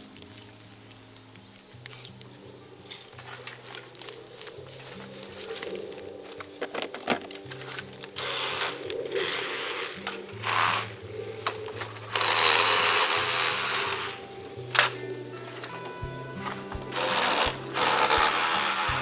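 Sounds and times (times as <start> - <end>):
background music with low bass: 0.0 - 19.0
noisy work sound: 0.0 - 19.0.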